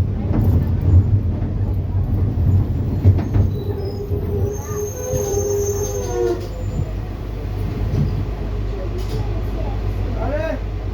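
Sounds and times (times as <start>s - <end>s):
bus engine and road rumble: 0.0s - 10.9s
wavering squeal: 3.4s - 6.8s.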